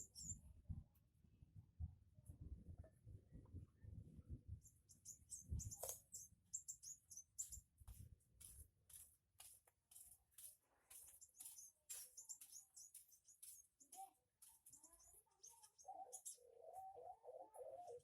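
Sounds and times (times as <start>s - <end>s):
small birds chirping: 0.0s - 0.5s, 4.4s - 18.0s.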